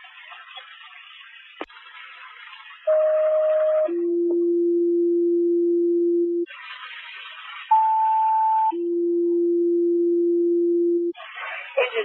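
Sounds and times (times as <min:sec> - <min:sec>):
radio hiss: 0:00.0 - 0:04.0, 0:06.5 - 0:08.8, 0:11.1 - 0:12.0
radio alert tones: 0:02.8 - 0:06.6.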